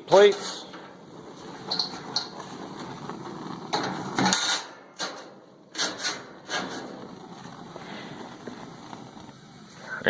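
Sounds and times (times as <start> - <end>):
sheet metal clattering on grill: 0.1 - 2.9, 3.7 - 7.1.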